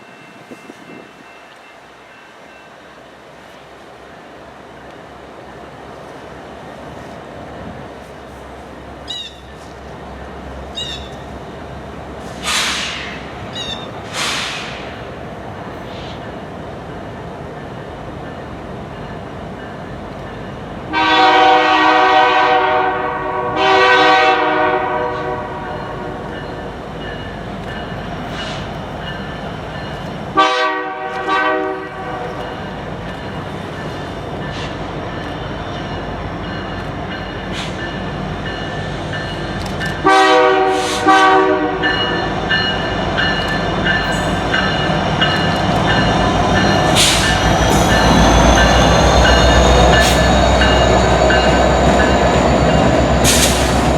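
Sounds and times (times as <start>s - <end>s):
train engine and wheels: 0.0s - 53.9s
locomotive air horn blasts: 20.9s - 26.3s, 30.4s - 32.4s, 40.0s - 42.0s.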